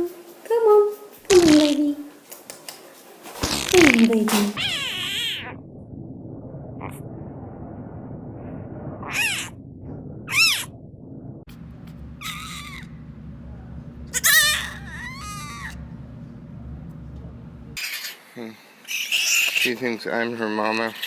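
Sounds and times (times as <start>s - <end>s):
baby animal high-pitched cries: 4.6s - 5.6s, 9.1s - 9.5s, 12.2s - 13.0s, 14.1s - 15.8s, 17.8s - 19.8s
steady low hum: 5.4s - 17.8s.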